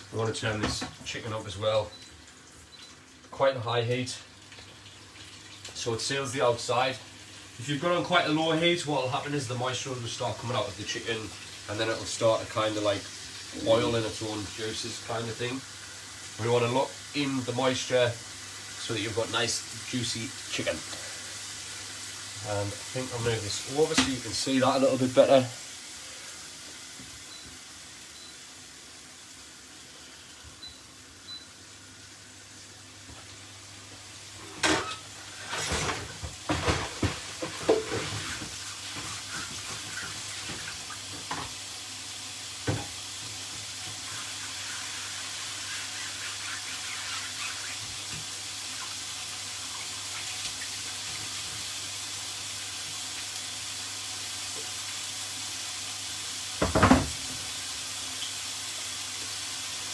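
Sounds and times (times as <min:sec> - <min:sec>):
chicken sizzling in pan: 0:00.0 - 0:59.9
dishes clattering: 0:34.4 - 0:39.8
tap running into sink: 0:35.6 - 0:41.6, 0:42.6 - 0:44.2, 0:56.6 - 0:57.5.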